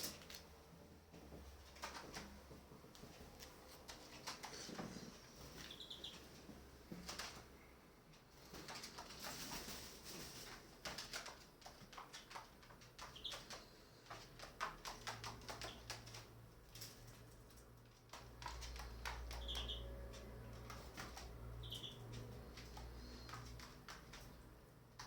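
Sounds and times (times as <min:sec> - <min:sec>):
claws and beaks tapping floor: 0:01.2 - 0:07.6, 0:08.2 - 0:25.0
high bird chirps: 0:05.6 - 0:06.3, 0:13.0 - 0:13.5, 0:19.3 - 0:20.0, 0:21.6 - 0:22.2.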